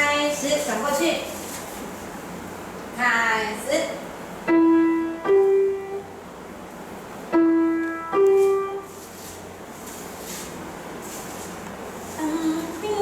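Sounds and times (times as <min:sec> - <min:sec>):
piano single notes ringing: 0:04.5 - 0:06.1, 0:07.3 - 0:09.0.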